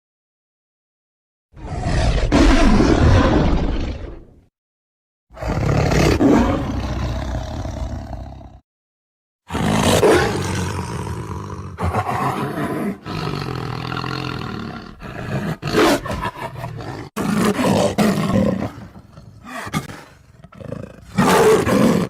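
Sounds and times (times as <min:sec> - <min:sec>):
deep monster growls and roars: 0:01.5 - 0:04.5, 0:05.3 - 0:08.6, 0:09.5 - 0:22.0.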